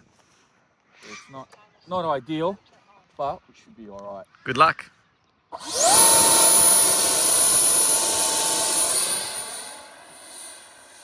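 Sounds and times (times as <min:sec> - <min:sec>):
model jet fan whine: 0:05.5 - 0:11.0.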